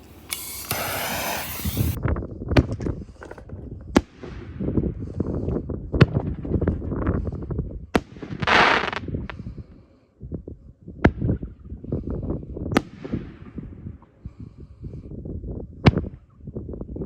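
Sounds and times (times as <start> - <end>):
firework hiss: 0.0 - 2.0.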